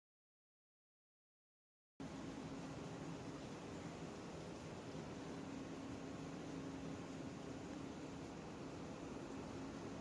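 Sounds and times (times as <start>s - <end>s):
blower hissing with low hum: 2.0s - 10.0s.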